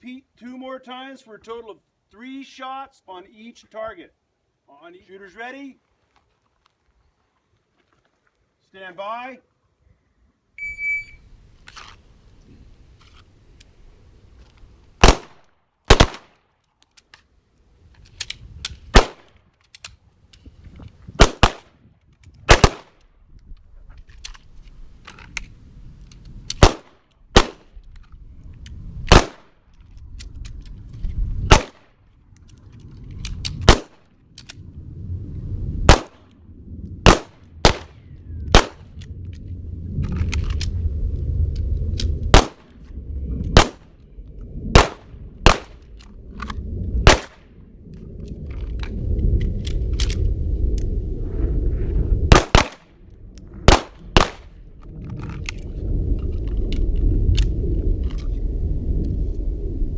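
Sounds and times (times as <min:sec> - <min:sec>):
pistol shots: 0:15.0 - 0:16.4, 0:18.9 - 0:19.3, 0:21.2 - 0:21.7, 0:22.5 - 0:22.9, 0:26.6 - 0:27.7, 0:29.1 - 0:29.5, 0:31.5 - 0:31.9, 0:33.7 - 0:34.0, 0:35.9 - 0:36.2, 0:37.0 - 0:38.8, 0:42.3 - 0:42.6, 0:44.8 - 0:45.8, 0:47.0 - 0:47.4, 0:52.3 - 0:52.8, 0:53.7 - 0:54.5.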